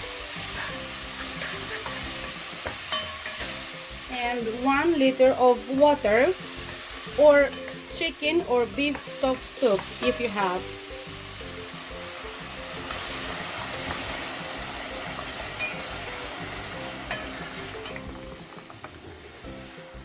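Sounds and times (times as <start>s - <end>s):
background music: 0.0s - 20.0s
loud sizzling in a pot: 0.0s - 20.0s.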